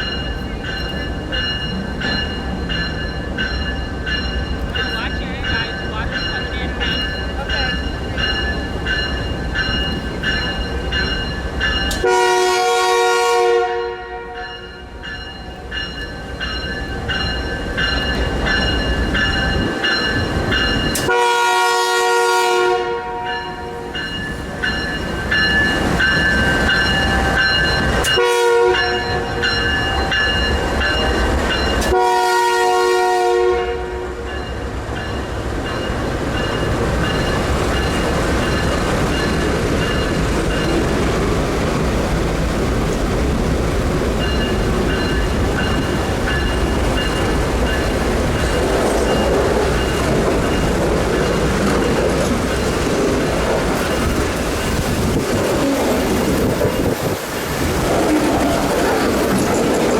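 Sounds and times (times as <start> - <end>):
train rumbling: 0.0 - 59.9
train horn blasts: 11.9 - 14.8, 21.0 - 23.8, 28.1 - 29.4, 31.8 - 34.3.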